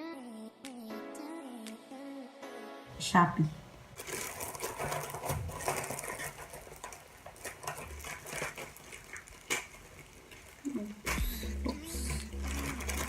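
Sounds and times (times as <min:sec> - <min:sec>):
plastic packaging rustling: 0:03.9 - 0:13.0.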